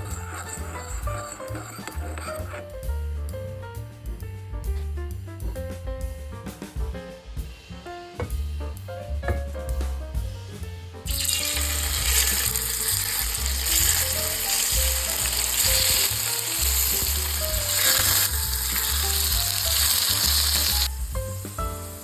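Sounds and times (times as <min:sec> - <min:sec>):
food sizzling in hot oil: 0:00.0 - 0:02.6, 0:11.1 - 0:22.0
background music: 0:11.0 - 0:22.0.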